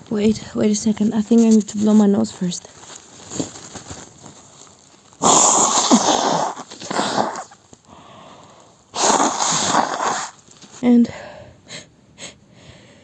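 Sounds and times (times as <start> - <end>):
person blowing nose: 5.2 - 7.6, 8.9 - 10.4.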